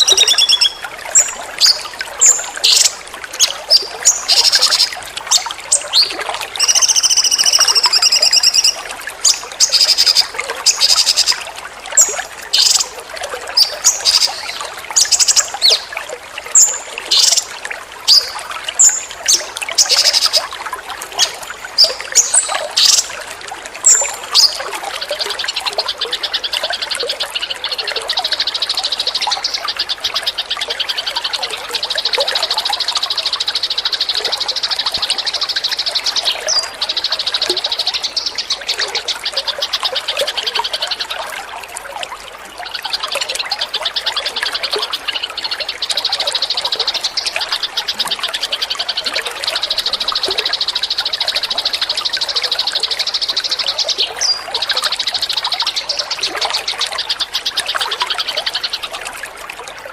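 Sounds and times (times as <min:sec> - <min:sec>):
songbird singing: 0:00.0 - 0:11.4, 0:12.0 - 0:20.4, 0:23.8 - 0:25.7, 0:43.8 - 0:59.0
trickling water: 0:00.0 - 0:59.9.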